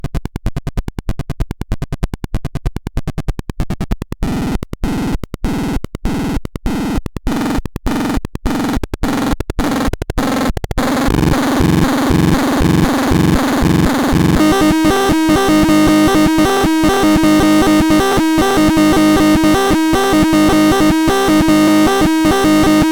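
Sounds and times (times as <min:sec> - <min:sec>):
electronic pulsing tones: 0:10.8 - 0:22.9.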